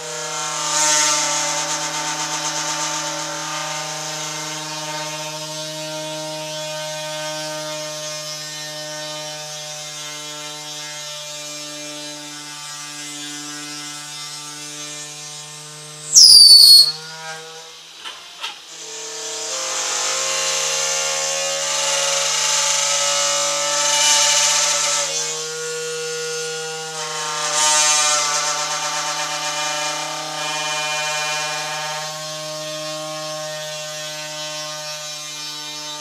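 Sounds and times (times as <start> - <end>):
drill squeal falling in pitch: 16.2 - 17.0.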